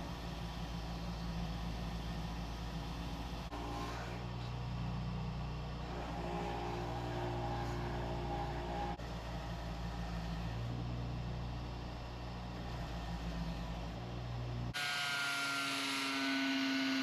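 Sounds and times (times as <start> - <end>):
high-pitched motor whine: 0.0 - 11.3, 12.6 - 17.0
power tool motor humming: 14.7 - 17.0.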